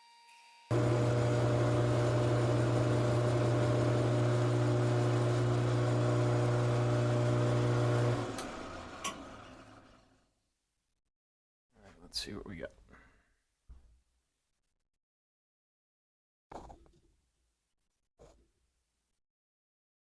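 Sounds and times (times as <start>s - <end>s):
metal lathe running: 0.7s - 9.9s.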